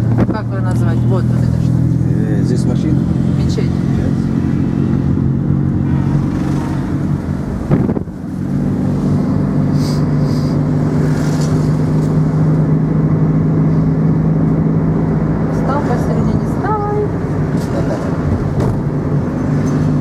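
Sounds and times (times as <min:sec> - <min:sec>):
road noise: 0:00.0 - 0:20.0
vehicle engine hum in cabin: 0:00.0 - 0:20.0.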